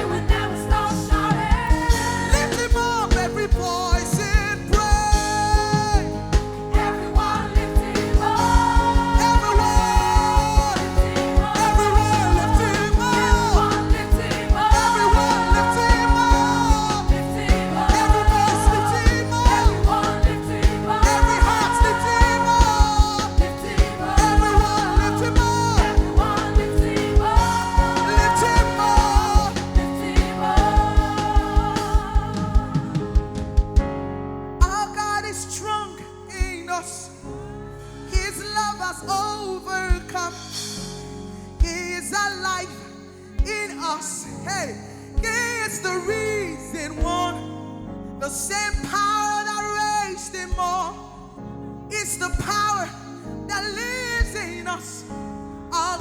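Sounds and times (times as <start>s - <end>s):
worship team singing: 0.0s - 33.8s
band with steady drum beat: 0.0s - 33.9s.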